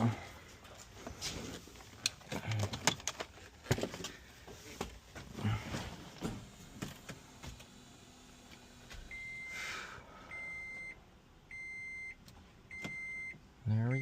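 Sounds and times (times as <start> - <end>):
car warning beeper beeping: 9.1 - 9.7, 10.3 - 14.0.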